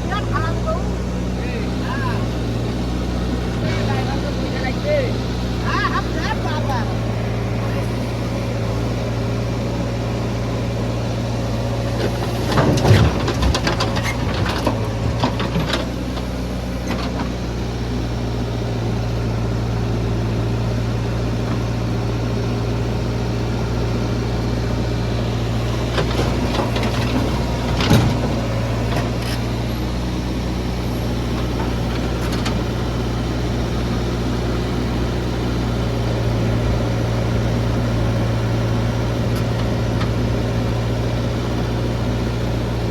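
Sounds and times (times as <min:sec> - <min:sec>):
heavy diesel engine running: 0:00.0 - 0:42.9
clatter and knocking: 0:12.0 - 0:16.0, 0:25.9 - 0:29.4.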